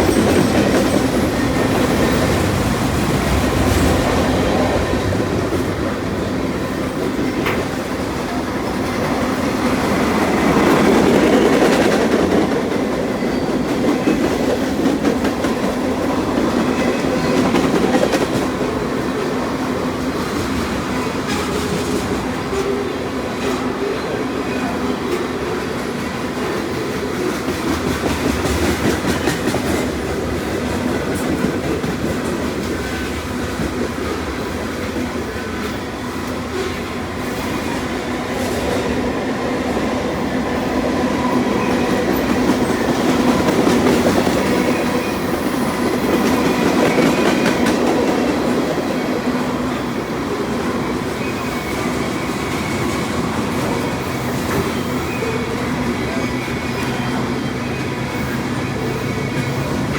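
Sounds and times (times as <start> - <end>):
wheels clacking over rail joints: 0.0 - 19.2
freight train rumbling past: 0.0 - 59.9.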